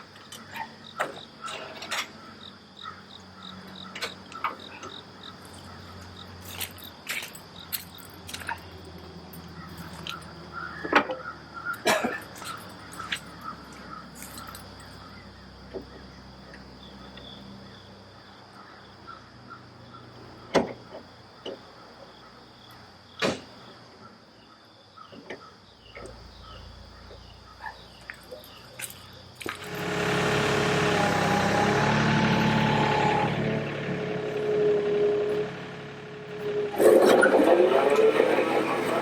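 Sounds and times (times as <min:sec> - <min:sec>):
insect chirps: 0:00.0 - 0:29.9
insects buzzing: 0:00.0 - 0:34.6
heavy engine running: 0:28.8 - 0:39.0.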